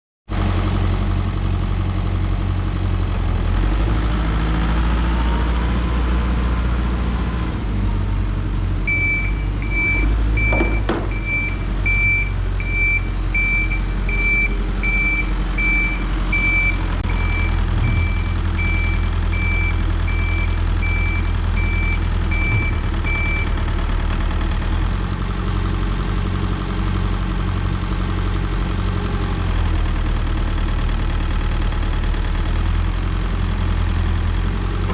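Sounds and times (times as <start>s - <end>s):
diesel engine running: 0.3s - 34.9s
reversing alarm beeps: 8.9s - 23.5s.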